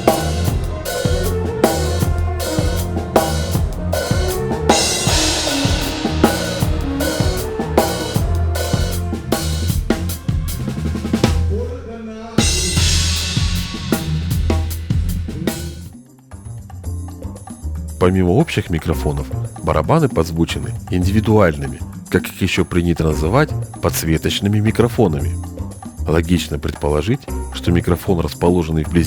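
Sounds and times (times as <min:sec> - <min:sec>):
low sustained notes: 0:00.0 - 0:11.2
cymbal crashes: 0:00.0 - 0:11.6, 0:12.4 - 0:15.9
drum kit playing a groove: 0:00.0 - 0:11.7, 0:12.4 - 0:15.9.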